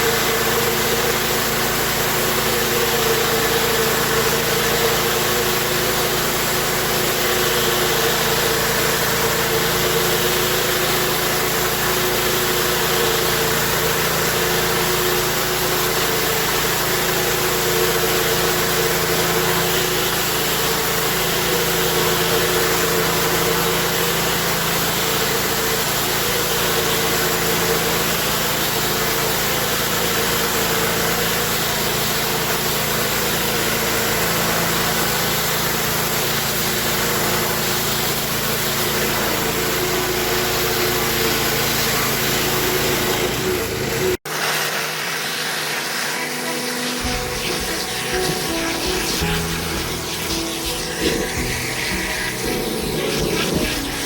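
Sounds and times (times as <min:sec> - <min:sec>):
pressure washer engine humming: 0:00.0 - 0:54.0
spray hissing: 0:45.6 - 0:54.0.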